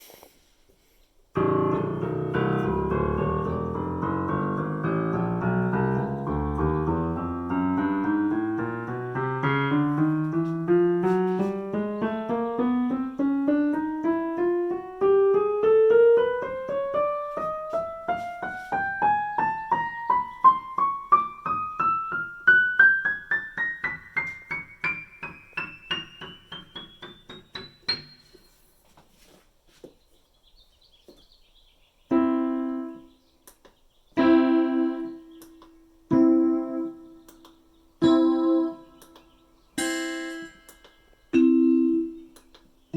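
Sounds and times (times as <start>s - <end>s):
digital piano rising notes: 1.4s - 28.5s, 34.2s - 37.4s, 38.0s - 39.2s, 39.8s - 42.4s.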